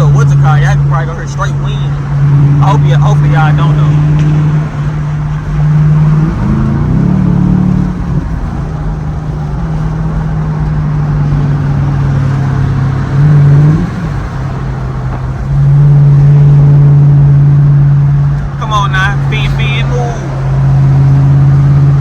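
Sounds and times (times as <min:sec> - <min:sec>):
car engine under throttle: 0:00.0 - 0:22.0.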